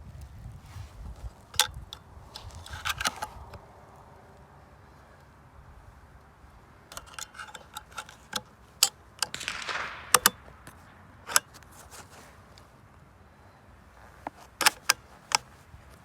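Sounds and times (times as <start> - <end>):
sharp clicks and knocks: 6.9 - 12.1, 14.3 - 15.5
short rustling: 6.9 - 12.8.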